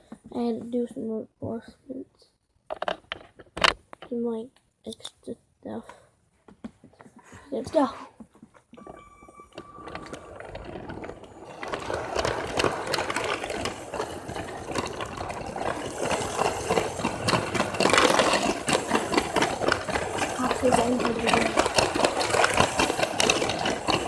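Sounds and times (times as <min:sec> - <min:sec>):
toy train rattling clicks: 0:09.6 - 0:24.0.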